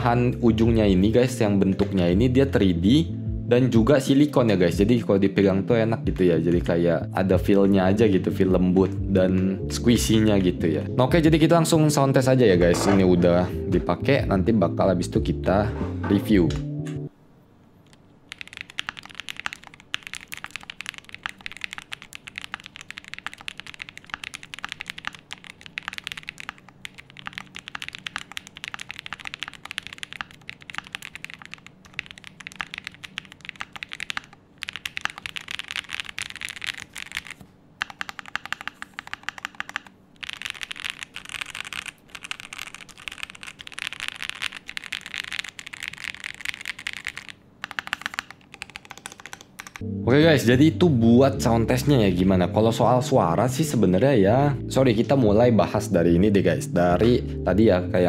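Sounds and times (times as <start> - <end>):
mechanical keyboard typing: 18.3 - 49.8.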